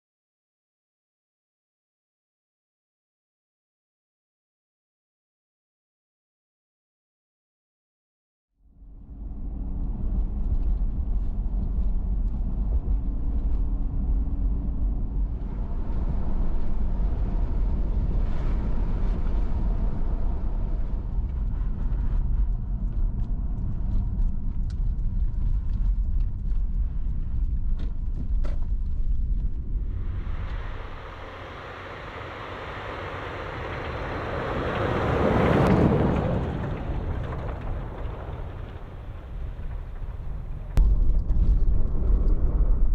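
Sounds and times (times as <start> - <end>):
vehicle engine and road rumble: 8.8 - 42.9.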